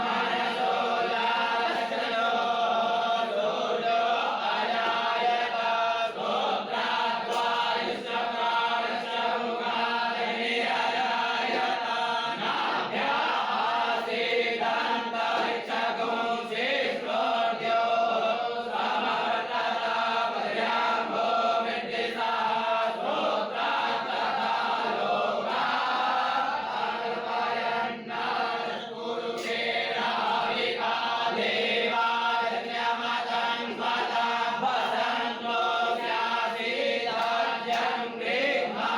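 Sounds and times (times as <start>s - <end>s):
group chanting in unison: 0.0s - 38.9s.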